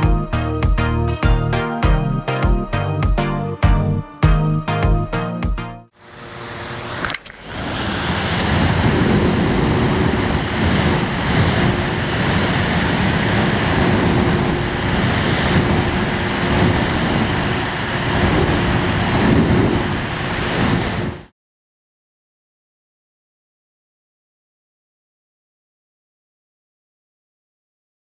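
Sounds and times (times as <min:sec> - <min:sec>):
electric fan running: 0:06.0 - 0:21.3
faint steady hum: 0:06.0 - 0:21.3.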